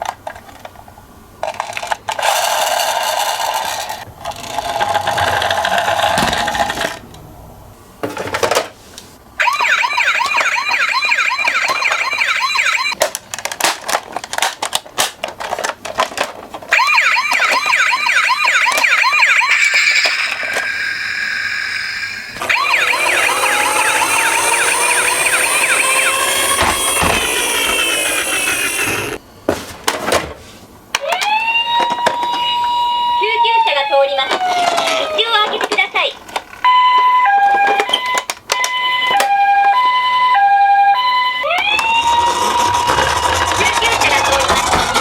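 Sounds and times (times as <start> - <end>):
toy siren yelping: 9.4 - 13.0, 16.7 - 29.2, 31.0 - 35.3, 38.6 - 45.0
plastic clicks and clatters: 13.0 - 16.7.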